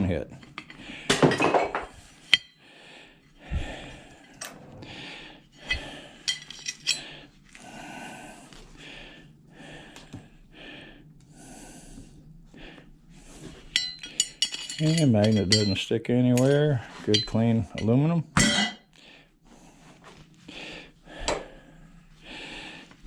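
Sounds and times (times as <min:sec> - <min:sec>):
heavy breathing or sniffing: 0:02.0 - 0:13.6
metal clicks and clinks: 0:05.7 - 0:07.1, 0:13.8 - 0:15.8, 0:16.4 - 0:17.4.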